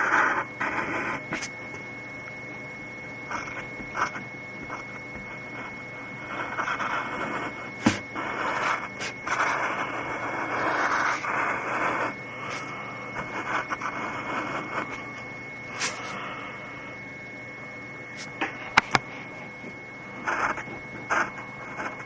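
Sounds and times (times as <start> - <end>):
pencil scratching on paper: 0.0 - 1.6, 3.3 - 15.1, 15.7 - 16.3, 20.2 - 22.0
faint high whine: 0.0 - 22.0.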